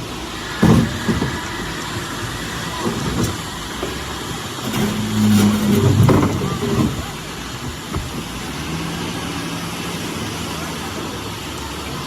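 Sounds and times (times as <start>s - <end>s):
steady hum: 0.0s - 7.8s
diesel engine rumbling: 0.0s - 12.0s.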